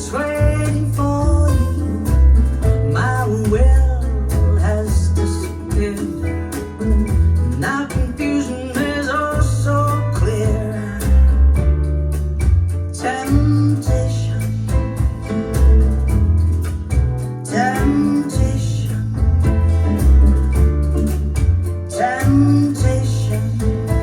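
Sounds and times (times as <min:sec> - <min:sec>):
person singing: 0:00.0 - 0:11.4, 0:13.0 - 0:15.1, 0:17.4 - 0:19.6, 0:21.9 - 0:24.0
song through speakers: 0:00.0 - 0:11.5, 0:12.4 - 0:24.0
drum hits: 0:00.0 - 0:24.0
heavy bass: 0:00.0 - 0:24.0.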